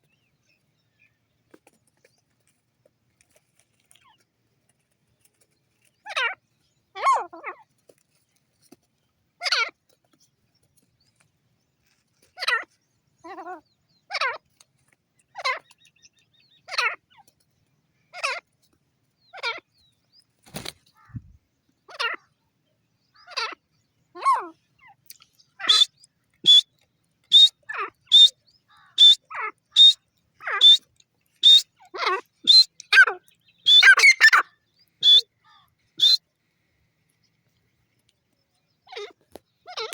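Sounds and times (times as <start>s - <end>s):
bird calling in harsh notes: 25.6s - 26.7s, 27.3s - 36.2s.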